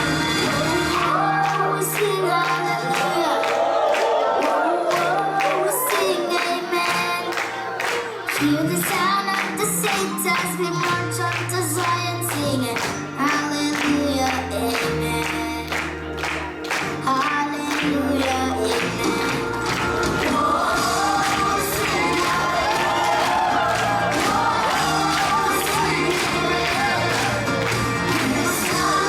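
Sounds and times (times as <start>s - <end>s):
bass line: 0.0s - 2.8s, 13.6s - 29.0s
drum beats: 18.8s - 29.0s.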